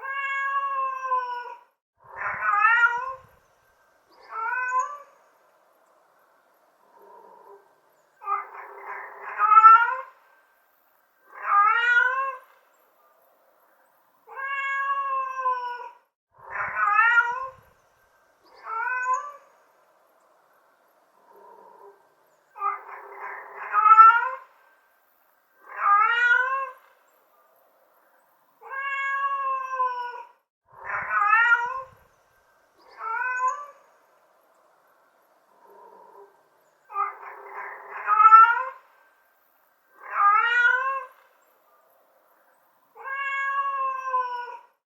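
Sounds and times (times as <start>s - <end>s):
cat meowing: 0.0s - 3.3s, 4.2s - 5.1s, 8.2s - 10.2s, 11.3s - 12.6s, 14.3s - 17.6s, 18.6s - 19.4s, 22.6s - 24.5s, 25.6s - 26.9s, 28.6s - 32.0s, 32.9s - 33.8s, 36.9s - 38.8s, 40.0s - 41.3s, 43.0s - 44.7s.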